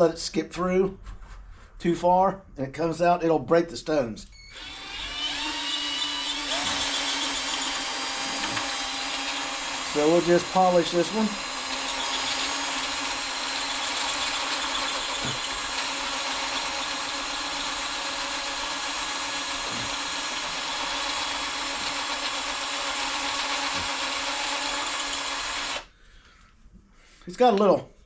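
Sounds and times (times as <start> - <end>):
electric drill humming: 4.5 - 25.9.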